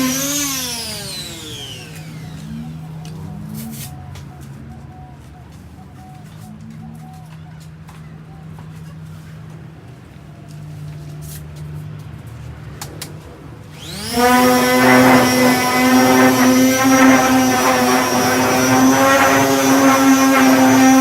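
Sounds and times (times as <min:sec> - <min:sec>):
disc sander whining: 0:00.0 - 0:04.2, 0:13.7 - 0:21.0.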